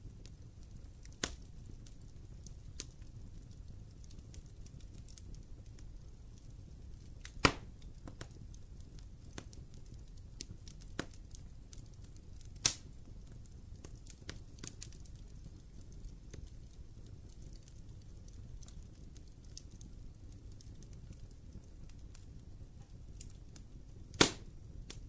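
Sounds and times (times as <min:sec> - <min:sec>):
fire crackling: 0:00.0 - 0:25.0
fire rumbling: 0:00.0 - 0:25.0
wood fire popping: 0:00.0 - 0:25.0.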